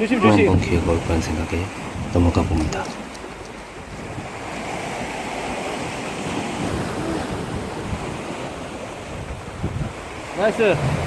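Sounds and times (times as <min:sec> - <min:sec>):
sea waves washing on shore: 0:00.0 - 0:11.0
wind buffeting microphone: 0:00.0 - 0:11.0.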